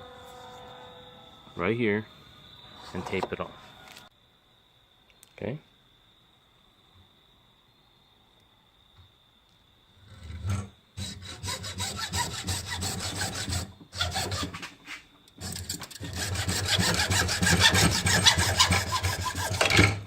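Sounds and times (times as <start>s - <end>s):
hand saw cutting plastic pipe: 10.3s - 14.8s, 15.4s - 20.0s.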